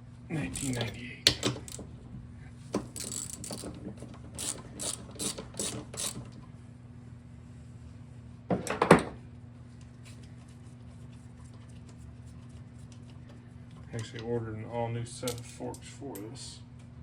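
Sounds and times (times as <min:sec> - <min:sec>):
steady low hum: 0:00.0 - 0:17.0
ratchet wrench clicking: 0:00.6 - 0:00.9, 0:03.0 - 0:03.7, 0:04.4 - 0:06.2.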